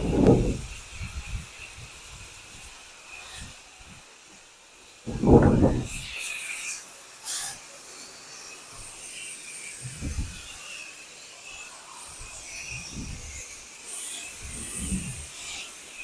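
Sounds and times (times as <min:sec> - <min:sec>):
dull low thumps: 0:00.0 - 0:00.7, 0:05.1 - 0:06.0.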